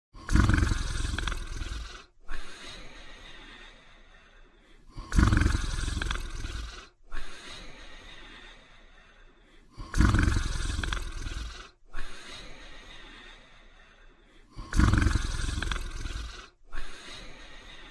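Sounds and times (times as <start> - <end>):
dog snoring: 0.2 - 3.6, 4.9 - 7.8, 9.7 - 13.2, 14.5 - 17.9
dog breathing softly: 1.2 - 17.9.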